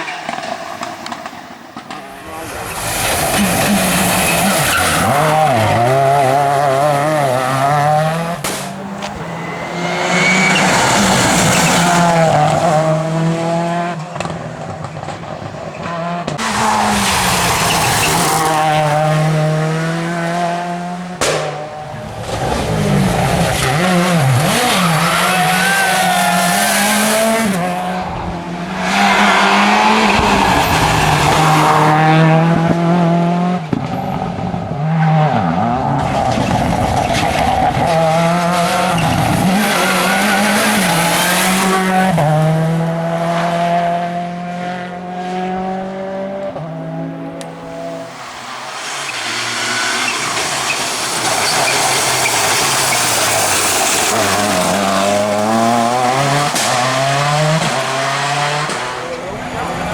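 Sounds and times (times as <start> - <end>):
rally car engine revving: 0.0 - 59.9
rushing surges of noise: 0.1 - 13.1.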